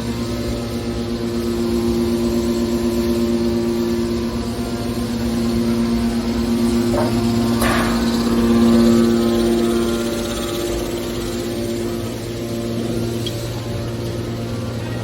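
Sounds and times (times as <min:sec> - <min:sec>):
hydraulic baler motor hum: 0:04.2 - 0:15.0.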